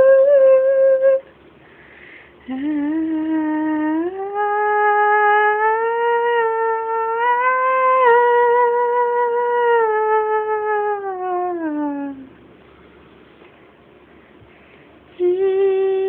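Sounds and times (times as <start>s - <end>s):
woman humming: 0.0s - 1.3s, 2.4s - 12.4s, 15.1s - 16.0s.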